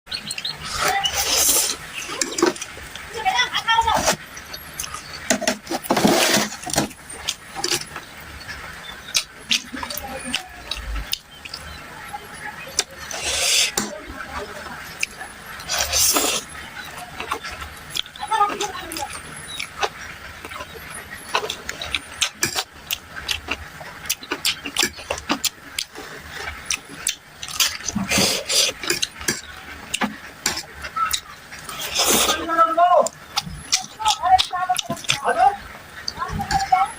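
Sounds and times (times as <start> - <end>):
noodle slurp: 0.6 - 2.7, 12.8 - 13.9, 15.6 - 16.5, 21.4 - 29.4, 31.6 - 32.4
wet mouth eating sounds: 4.0 - 11.8, 12.7 - 14.0, 14.8 - 36.9.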